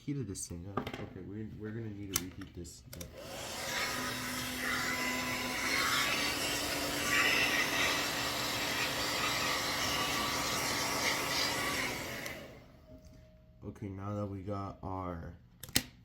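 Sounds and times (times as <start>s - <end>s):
hot-air gun blowing: 3.2s - 12.6s.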